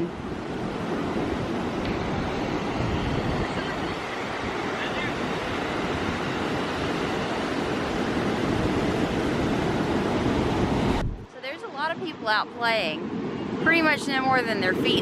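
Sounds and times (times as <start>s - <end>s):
surf breaking on beach: 0.0s - 11.1s
wind buffeting microphone: 0.0s - 15.0s.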